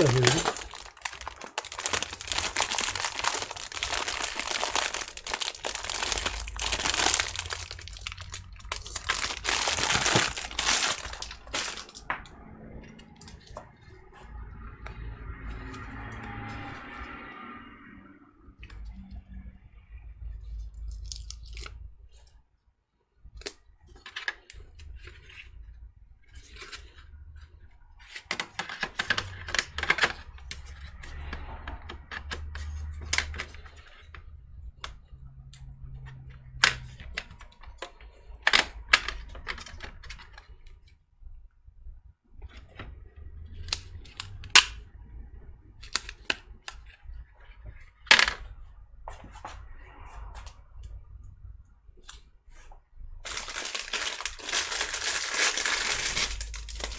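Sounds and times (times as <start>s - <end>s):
velcro tape rustling: 0.0s - 12.0s, 53.2s - 56.9s
low hum: 0.0s - 21.0s.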